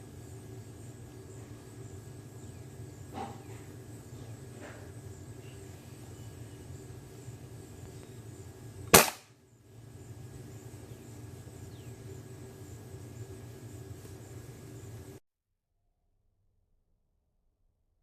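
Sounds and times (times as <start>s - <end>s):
rifle shot: 8.9s - 9.3s.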